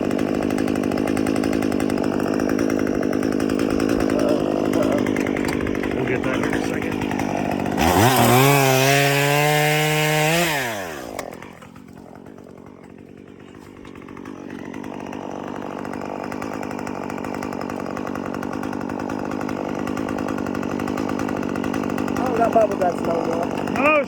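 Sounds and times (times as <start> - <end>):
chainsaw revving and idling: 0.0 - 24.0.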